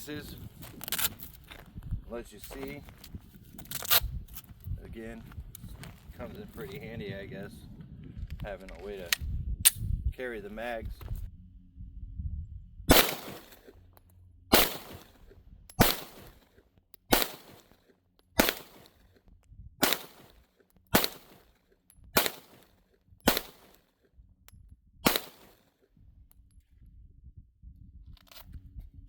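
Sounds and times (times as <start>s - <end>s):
pistol shots: 12.9s - 13.8s, 14.5s - 17.8s, 18.4s - 19.0s, 19.8s - 21.6s, 22.2s - 23.9s, 25.0s - 25.7s.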